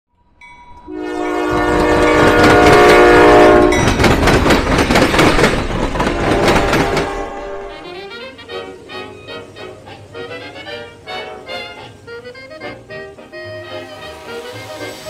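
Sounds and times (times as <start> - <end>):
train air horn blast: 0.8 - 3.9, 6.2 - 15.0
train wheels clattering over crossing: 1.2 - 7.8.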